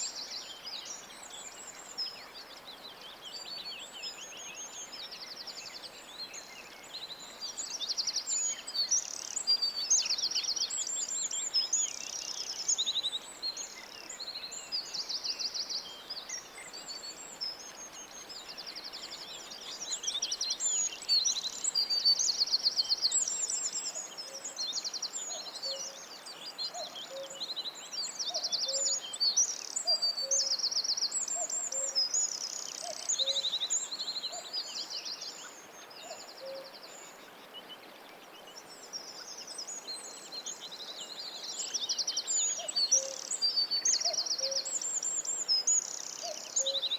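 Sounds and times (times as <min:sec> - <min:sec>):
songbirds chirping and trilling: 0:00.0 - 0:46.9.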